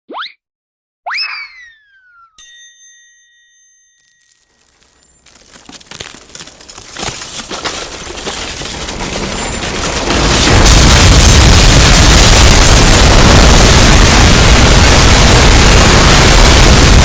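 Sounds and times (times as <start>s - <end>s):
cracking and crumbling: 4.0s - 15.2s
deep rumble of collapsing debris: 4.6s - 17.0s.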